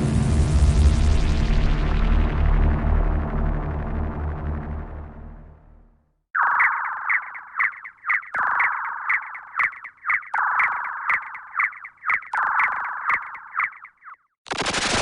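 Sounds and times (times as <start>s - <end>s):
quick electronic chirps: 6.4s - 14.4s.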